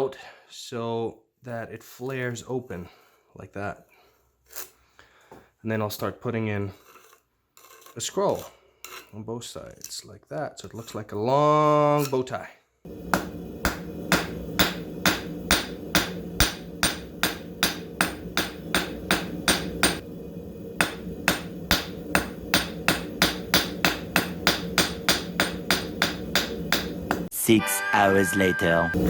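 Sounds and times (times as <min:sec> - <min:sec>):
hammer blows on steel on anvil: 0:12.9 - 0:27.3
steady low hum: 0:12.9 - 0:27.3.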